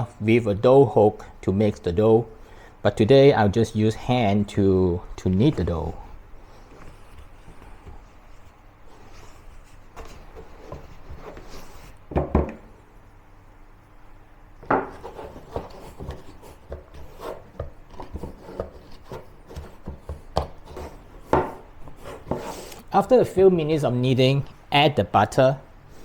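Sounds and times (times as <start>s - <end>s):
dough kneaded by hand: 14.6s - 23.3s.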